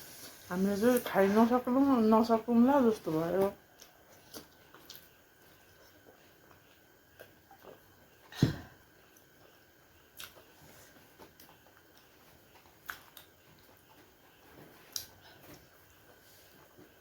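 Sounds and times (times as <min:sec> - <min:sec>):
quiet chewing: 0:03.3 - 0:08.3, 0:09.0 - 0:17.0.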